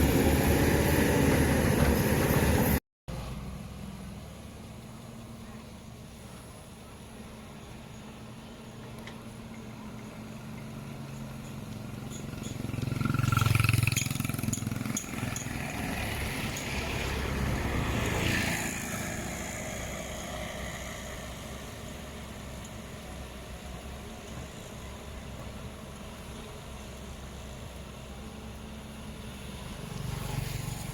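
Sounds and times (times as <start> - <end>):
motor vehicles passing close by: 8.8 - 30.9.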